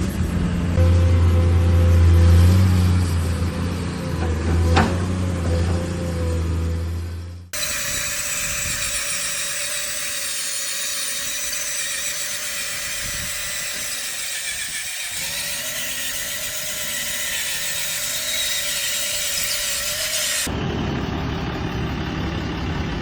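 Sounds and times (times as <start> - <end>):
small electric motor whine: 7.6 - 20.5.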